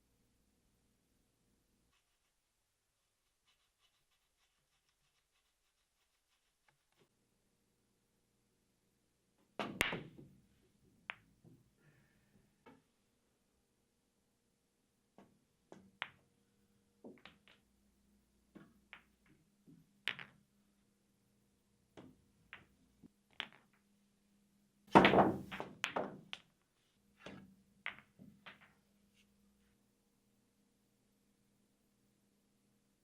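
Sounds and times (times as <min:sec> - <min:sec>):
pool balls clacking: 0:24.9 - 0:26.5.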